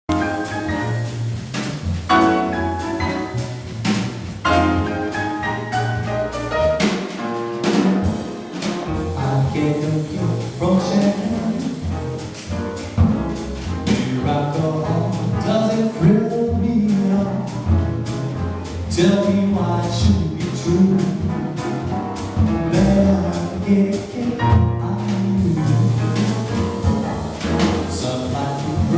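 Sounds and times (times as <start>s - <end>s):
drum and cymbal strokes: 0.1s - 15.8s, 25.0s - 28.9s
jazz band playing: 0.1s - 28.9s
walking bass line: 0.1s - 28.9s.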